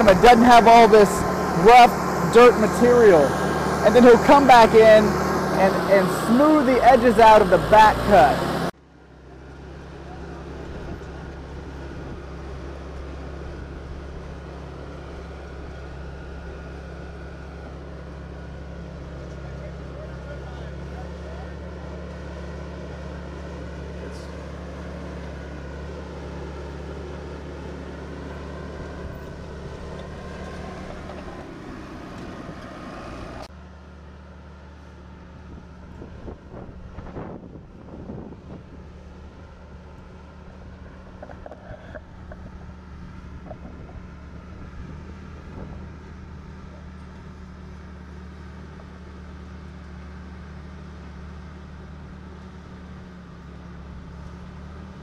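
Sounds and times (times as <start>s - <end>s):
bulldozer diesel engine running: 0.0s - 55.0s.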